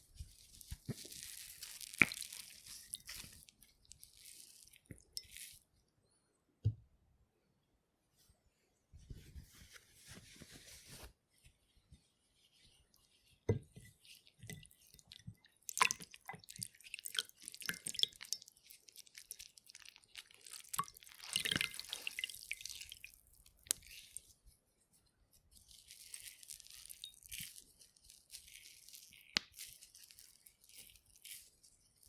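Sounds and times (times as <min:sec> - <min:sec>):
water dripping: 0:00.7 - 0:05.6, 0:14.0 - 0:24.2.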